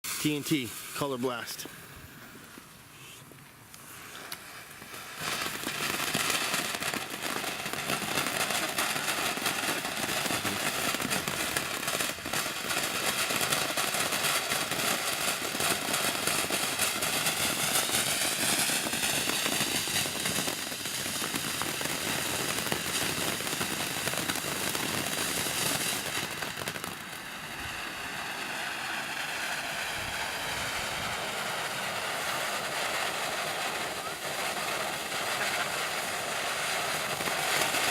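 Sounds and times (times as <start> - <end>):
firework hissing and crackling: 0.0 - 37.9.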